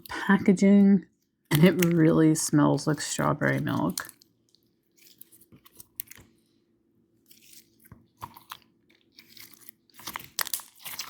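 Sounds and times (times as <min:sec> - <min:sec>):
slime squishing with sticky pops: 0:07.3 - 0:11.0.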